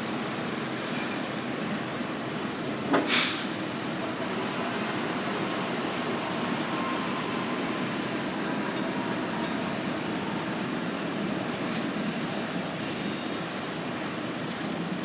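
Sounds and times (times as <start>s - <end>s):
tram running: 0.0s - 15.0s
short sharp hiss: 3.1s - 3.6s.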